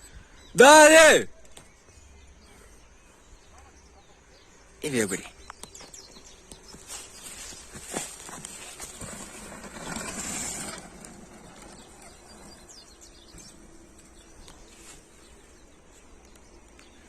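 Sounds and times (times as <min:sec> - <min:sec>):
bird chirps: 0:01.3 - 0:08.9, 0:11.0 - 0:17.0
mountain bike tyres on dirt: 0:05.0 - 0:17.0.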